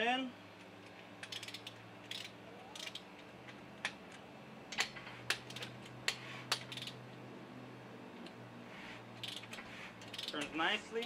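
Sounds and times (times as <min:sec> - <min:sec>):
ratchet wrench clicking: 0:01.2 - 0:03.1, 0:04.8 - 0:07.0, 0:09.2 - 0:11.0.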